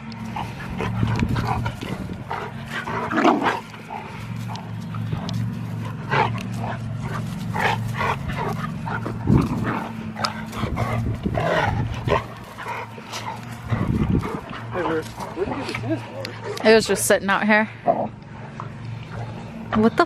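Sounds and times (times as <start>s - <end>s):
dogs barking and yelping: 0.0s - 17.2s
steady low hum: 0.0s - 20.0s.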